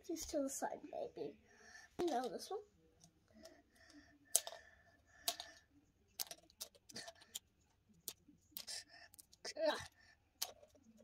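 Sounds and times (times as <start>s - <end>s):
plastic toy parts clicking: 2.0s - 2.4s, 3.4s - 11.0s.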